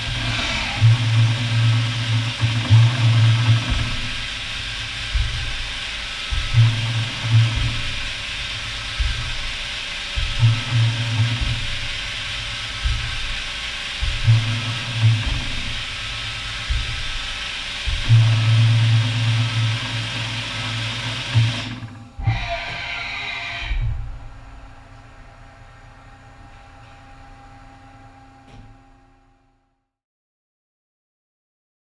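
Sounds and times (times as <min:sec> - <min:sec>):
coolant spray hiss: 0:00.0 - 0:21.6
low lathe hum: 0:00.0 - 0:29.6.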